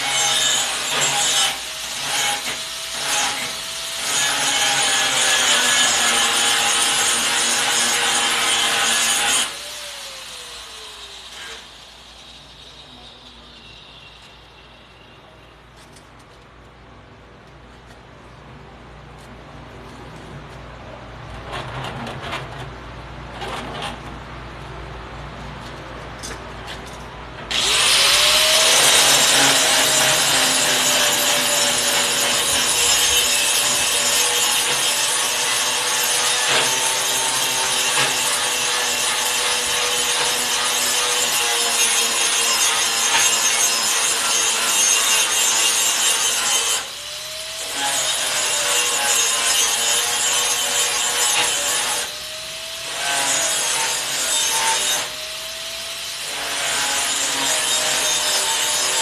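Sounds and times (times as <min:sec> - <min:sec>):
angle grinder grinding metal: 0:27.5 - 0:59.0.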